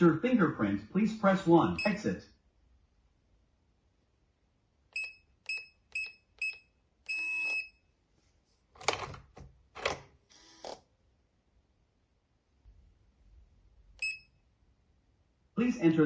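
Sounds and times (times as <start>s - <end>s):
door lock keypad beeping: 5.0s - 7.8s, 14.0s - 14.4s.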